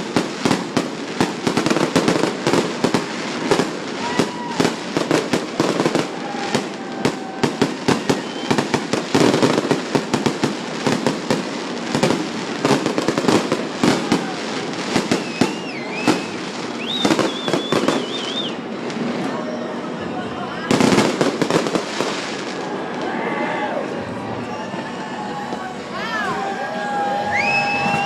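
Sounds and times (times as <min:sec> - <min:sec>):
fireworks bangs and crackles: 0:00.0 - 0:23.3, 0:27.4 - 0:28.0
warbling firework whistles: 0:04.0 - 0:09.7, 0:15.0 - 0:20.0, 0:27.2 - 0:28.0.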